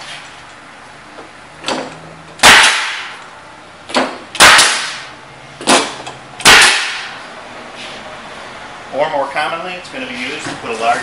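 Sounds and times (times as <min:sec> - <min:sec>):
pneumatic stapler firing: 0:01.6 - 0:03.2, 0:03.9 - 0:07.2.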